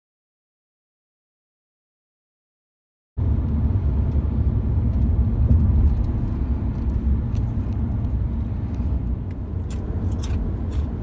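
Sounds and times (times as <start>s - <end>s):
car engine rumble: 3.2s - 11.0s.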